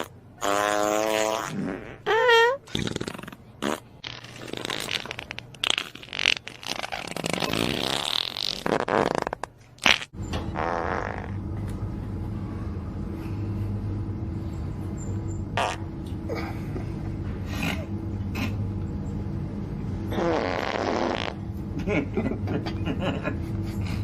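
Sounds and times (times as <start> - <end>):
rasping farts: 0.0 - 11.4, 15.6 - 15.9, 20.1 - 21.4
steady low hum: 0.0 - 24.0.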